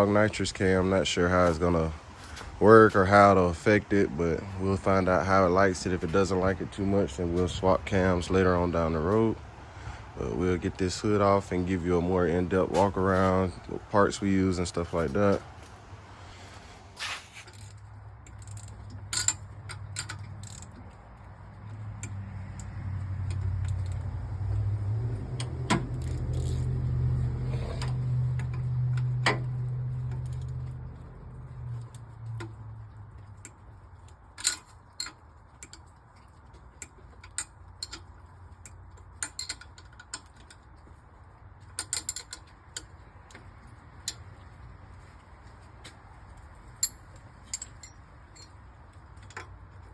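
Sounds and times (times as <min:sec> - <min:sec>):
hand tools clinking on metal: 0:45.8 - 0:49.9.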